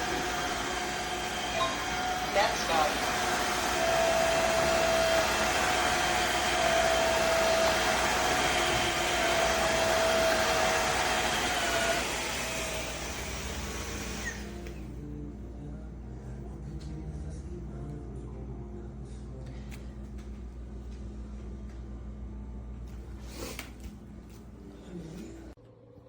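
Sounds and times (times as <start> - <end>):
cordless vacuum running: 0.0 - 15.0.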